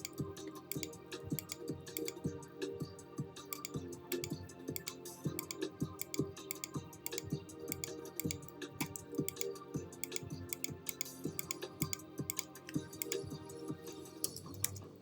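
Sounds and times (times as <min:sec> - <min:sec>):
sharp clicking percussion: 0:00.0 - 0:02.3, 0:03.5 - 0:13.4, 0:14.2 - 0:14.9.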